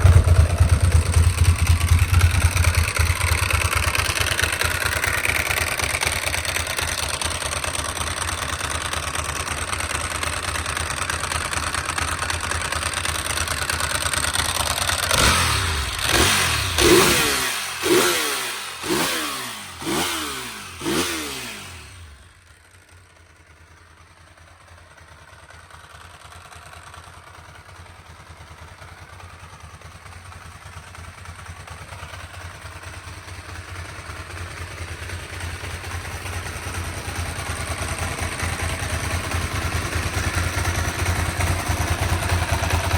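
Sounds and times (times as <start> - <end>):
motorcycle engine idling and revving: 0.0 - 42.9.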